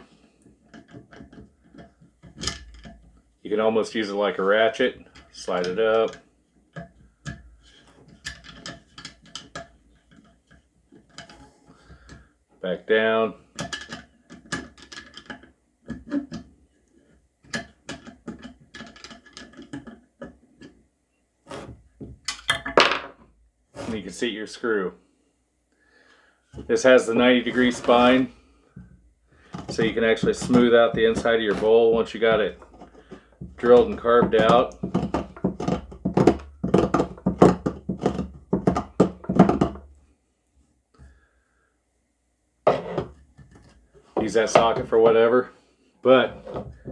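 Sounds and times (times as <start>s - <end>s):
knife scraping wood: 29.4s - 38.8s.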